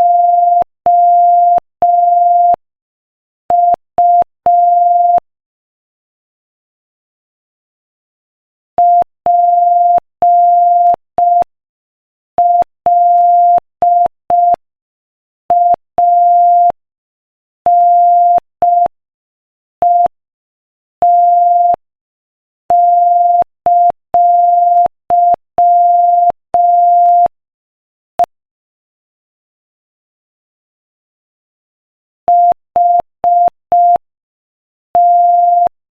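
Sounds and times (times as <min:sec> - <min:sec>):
morse code beeps: 0:22.7 - 0:27.3, 0:32.3 - 0:34.0, 0:35.0 - 0:35.8.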